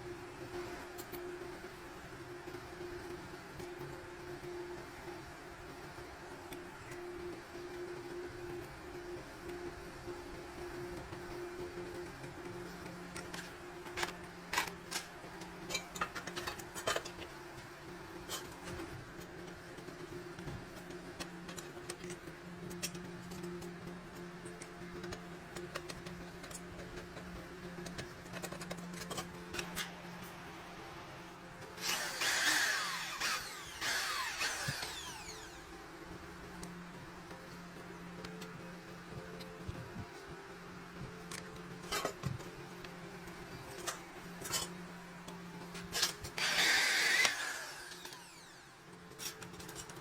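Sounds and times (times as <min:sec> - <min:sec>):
power tool running: 0:31.8 - 0:35.8, 0:45.9 - 0:48.8.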